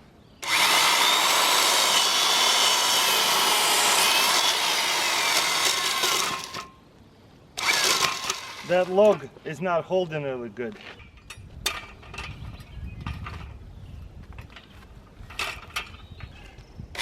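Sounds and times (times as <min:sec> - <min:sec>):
electric chainsaw sawing log: 0:00.4 - 0:06.7, 0:07.6 - 0:09.0.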